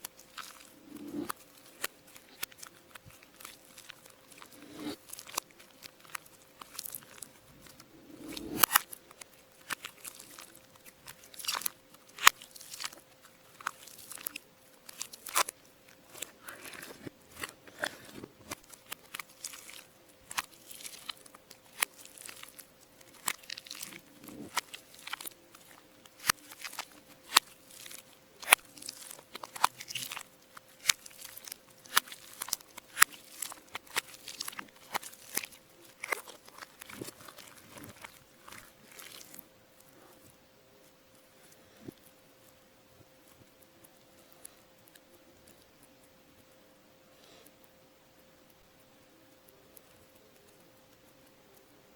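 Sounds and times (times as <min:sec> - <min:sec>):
slime clicking and popping: 0:00.0 - 0:39.4
soft slime squelches: 0:00.0 - 0:51.9.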